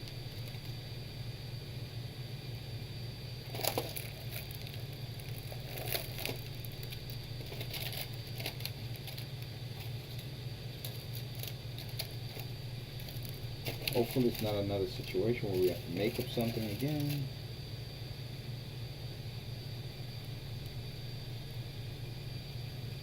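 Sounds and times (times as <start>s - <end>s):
small parts and packaging crinkling: 0.0s - 0.8s, 3.4s - 17.3s
low electrical hum: 0.0s - 23.0s.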